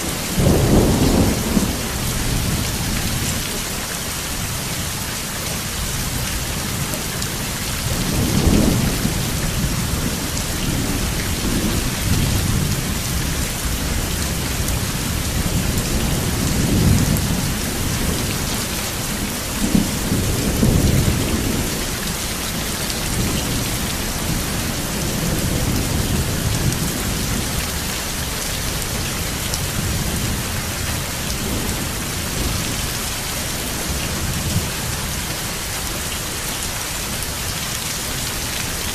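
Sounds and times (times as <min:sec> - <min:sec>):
thunder rumbling: 0:00.0 - 0:03.5, 0:05.8 - 0:35.2
heavy rain falling: 0:00.0 - 0:38.9.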